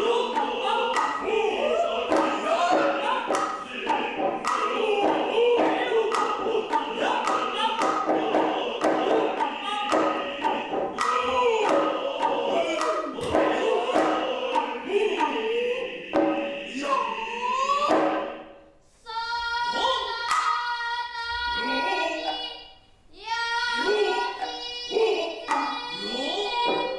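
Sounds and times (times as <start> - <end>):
hand drum strikes: 0.0 - 1.4, 2.1 - 15.4
chorus chanting: 0.0 - 26.9.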